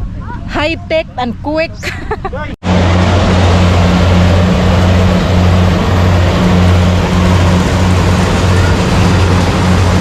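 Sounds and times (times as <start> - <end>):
harvester engine running: 2.6 - 10.0.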